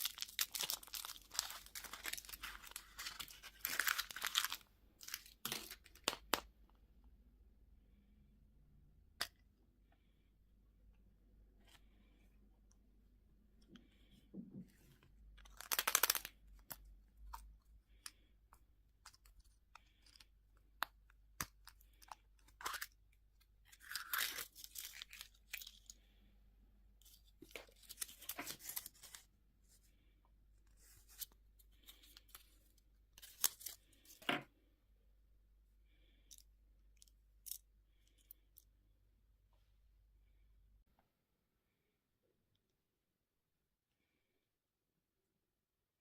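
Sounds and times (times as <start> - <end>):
packaging being torn open: 0.0 - 6.2, 15.5 - 16.3.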